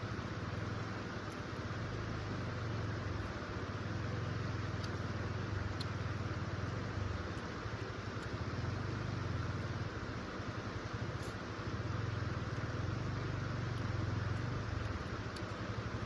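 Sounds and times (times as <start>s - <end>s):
faint high ticks: 0.6s - 1.6s, 4.2s - 10.0s, 10.9s - 16.0s.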